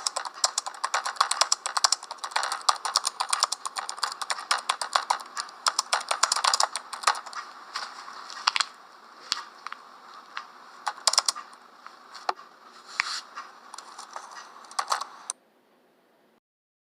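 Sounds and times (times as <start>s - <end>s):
typing on computer keyboard: 0.0s - 7.4s, 10.8s - 11.6s, 13.8s - 15.4s.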